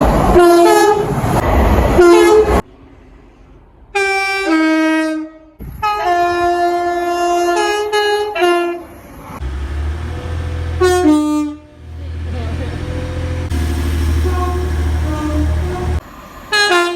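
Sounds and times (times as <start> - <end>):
passing train noise: 0.0 - 16.9
two-tone train horn: 0.4 - 1.1, 2.0 - 2.6, 4.0 - 8.9, 10.8 - 11.8, 14.0 - 16.9.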